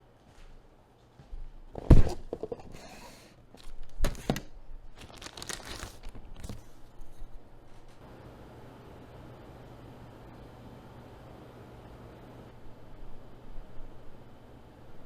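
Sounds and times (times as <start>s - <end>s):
knocks and thuds of handling: 1.7s - 2.8s
packaging rustling: 3.5s - 8.0s.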